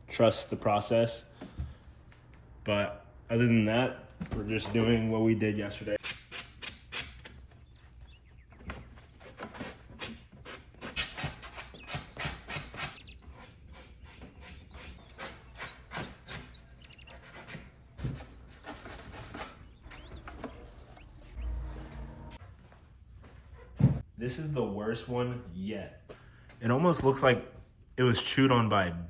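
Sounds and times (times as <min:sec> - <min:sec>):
sandpaper rubbing back and forth: 0:09.1 - 0:21.4.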